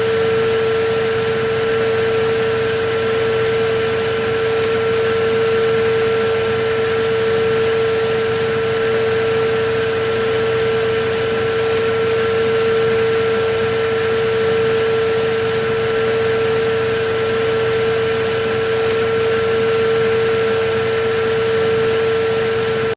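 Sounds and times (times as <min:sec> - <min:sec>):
vacuum cleaner running: 0:00.0 - 0:22.9.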